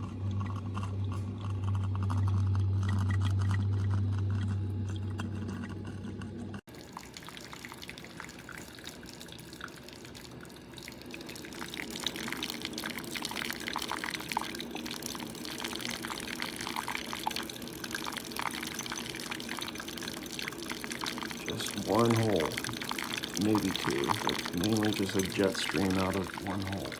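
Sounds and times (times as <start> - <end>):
coffee maker water gurgling: 0.0 - 26.9.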